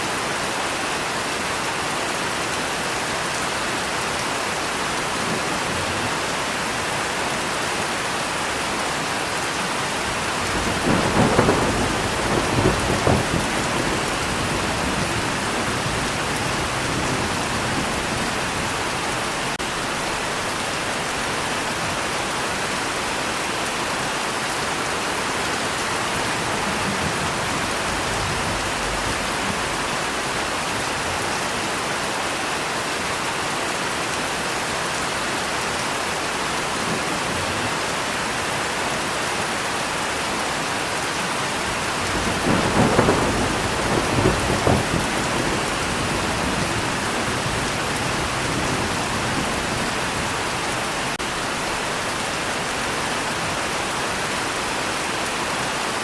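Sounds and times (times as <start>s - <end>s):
steady rain: 0.0s - 56.0s
thunder rumbling: 10.0s - 22.0s, 25.6s - 31.3s, 41.7s - 52.1s.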